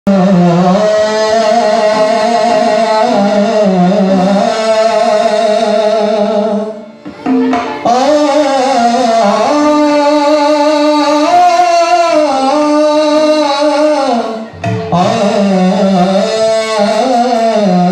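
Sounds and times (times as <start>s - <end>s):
instrumental accompaniment: 0.1s - 17.9s
man singing sliding held notes: 0.1s - 17.9s.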